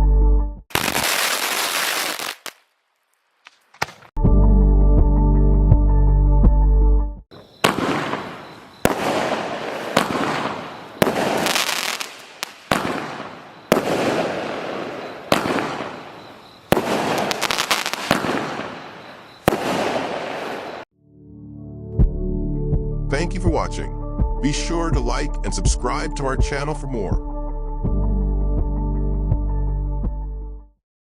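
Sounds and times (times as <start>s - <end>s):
background music: 4.2s - 7.2s, 21.0s - 30.7s
firework shots banging: 7.3s - 20.9s.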